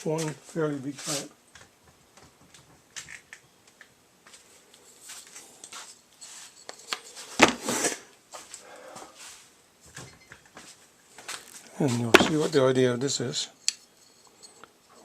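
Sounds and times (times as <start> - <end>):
scraping rustle: 0.0 - 1.3, 4.4 - 9.5.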